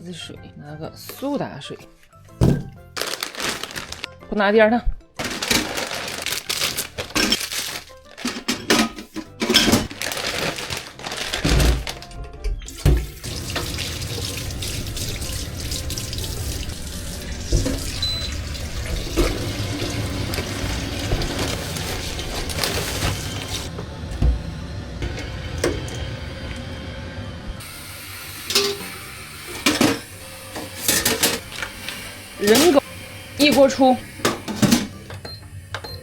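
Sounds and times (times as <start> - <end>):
tap water running into sink: 12.6 - 24.4, 25.0 - 26.7, 27.6 - 34.9.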